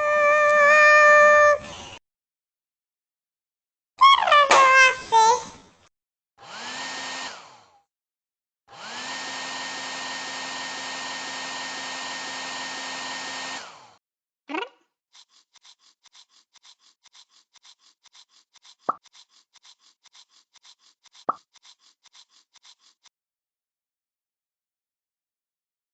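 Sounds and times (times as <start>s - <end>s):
hair dryer motor whine: 6.4s - 7.8s, 8.7s - 14.0s.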